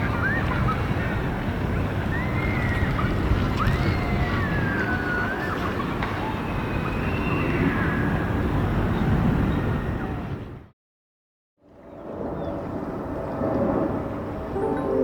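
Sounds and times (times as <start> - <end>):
wind rumble on microphone: 0.0 - 10.7.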